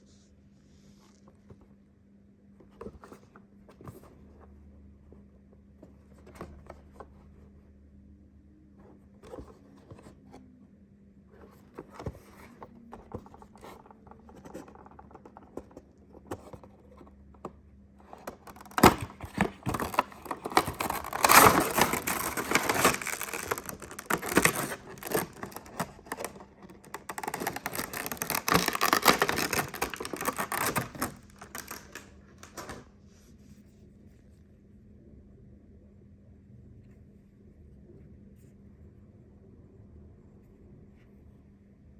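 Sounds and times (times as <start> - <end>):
cardboard and plastic crinkling: 18.0 - 32.9.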